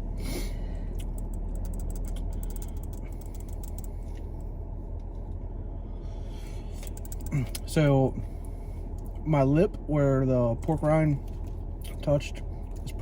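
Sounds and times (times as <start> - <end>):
car cabin rumble: 0.0 - 5.8
sharp clicks and crackles: 0.9 - 4.0, 6.8 - 7.7.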